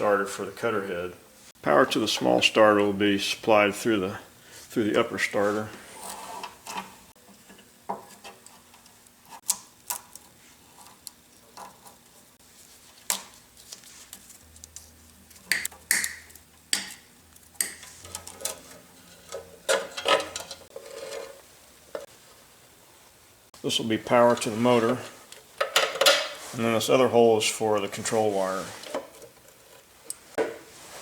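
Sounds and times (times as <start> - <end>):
small metal parts clattering: 18.0 - 21.4.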